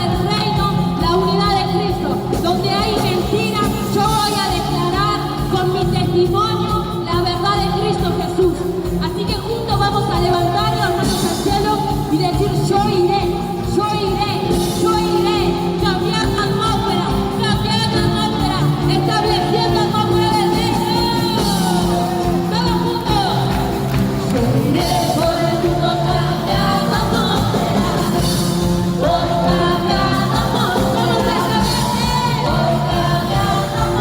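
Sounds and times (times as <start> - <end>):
band playing worship music: 0.0 - 34.0
people singing: 14.0 - 34.0.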